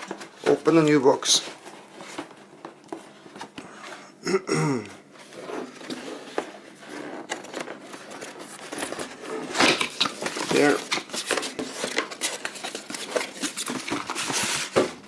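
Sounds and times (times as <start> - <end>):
packaging rustling and scraping: 0.0 - 4.2, 5.0 - 15.0
murmured voice: 4.2 - 5.0.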